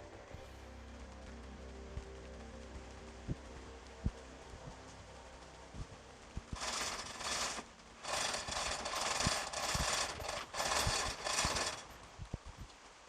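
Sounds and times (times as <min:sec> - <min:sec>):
metal hand tool rasping strokes: 0:06.6 - 0:11.9.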